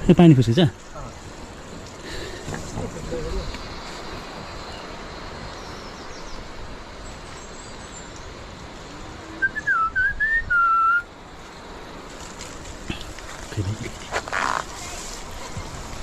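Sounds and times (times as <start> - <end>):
running water hissing: 0.2 - 9.5, 11.0 - 16.0
whistled notes: 9.4 - 11.1.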